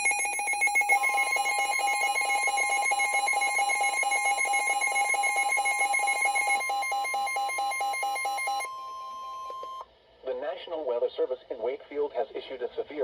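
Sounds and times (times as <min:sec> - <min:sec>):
fast pulsing alarm beep: 0:00.0 - 0:09.8
steady pure warning tone: 0:00.0 - 0:09.8.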